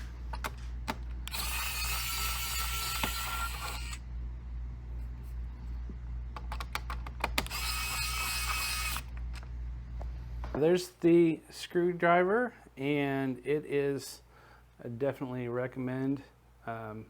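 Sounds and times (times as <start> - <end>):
electric screwdriver whirring: 0.4 - 4.0, 6.8 - 9.2.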